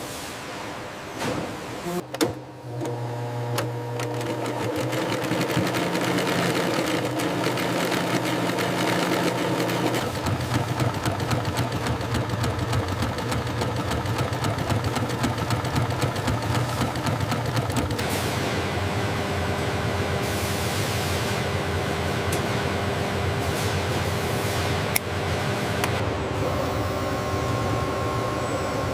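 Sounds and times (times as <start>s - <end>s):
machine hum: 1.8s - 28.9s
small machine clattering: 4.0s - 18.0s.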